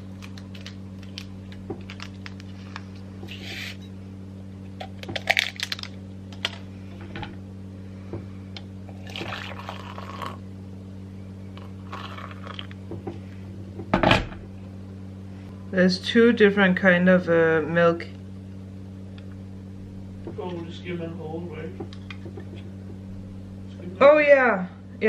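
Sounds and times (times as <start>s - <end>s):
low electrical hum: 0.0s - 25.0s
liquid poured into a cup: 8.9s - 10.4s.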